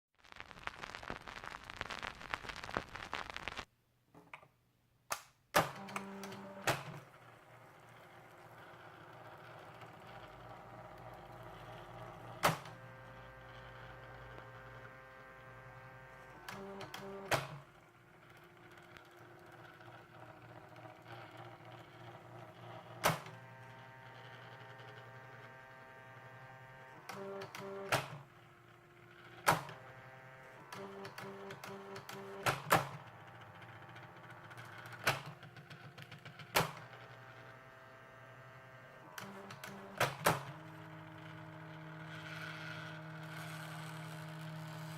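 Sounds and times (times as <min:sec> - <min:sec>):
motor hum: 0:05.6 - 0:44.9
typewriter mechanical buzzing: 0:30.6 - 0:37.6.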